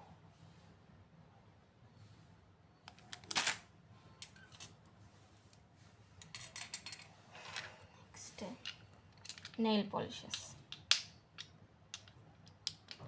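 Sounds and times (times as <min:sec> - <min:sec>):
small items clicking: 0:08.6 - 0:09.6, 0:10.3 - 0:13.0.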